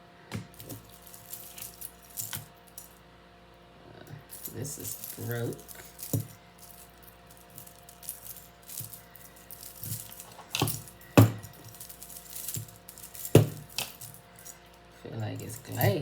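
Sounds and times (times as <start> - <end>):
jewelry clinking and rattling: 0.5 - 3.0, 4.1 - 16.0
pieces knocked down on table: 10.4 - 11.5.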